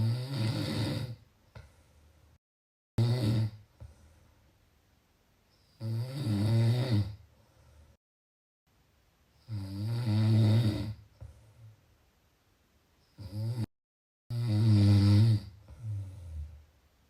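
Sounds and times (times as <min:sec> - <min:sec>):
low snoring: 0:00.0 - 0:01.2, 0:03.0 - 0:04.0, 0:05.6 - 0:07.3, 0:09.4 - 0:11.1, 0:13.2 - 0:13.7, 0:14.3 - 0:16.6.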